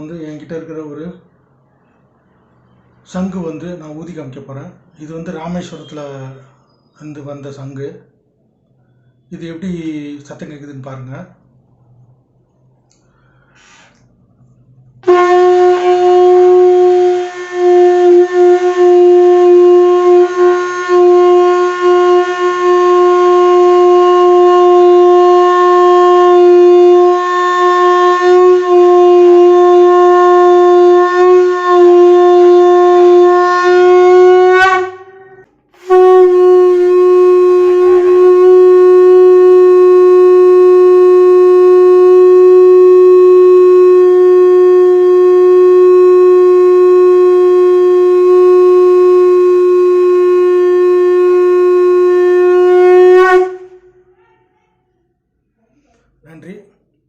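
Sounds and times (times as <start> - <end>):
conch shell blown: 12.1 - 54.2.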